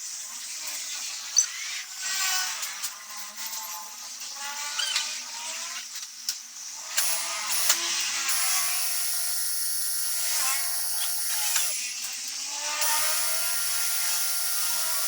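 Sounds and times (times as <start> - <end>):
electric motor whining: 7.0 - 12.0, 12.6 - 15.0.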